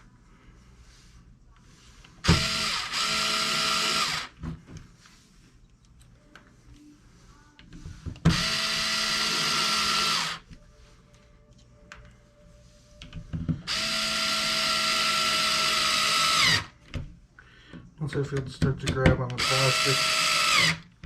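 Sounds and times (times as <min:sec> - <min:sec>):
power drill driving screws: 0:02.2 - 0:04.3, 0:08.3 - 0:10.4, 0:13.7 - 0:16.7, 0:19.4 - 0:20.8.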